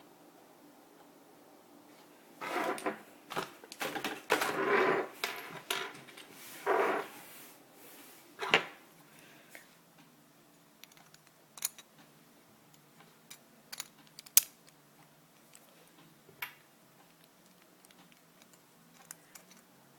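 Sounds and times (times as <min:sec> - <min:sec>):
small hard pieces scraping and clicking: 0:17.1 - 0:19.7.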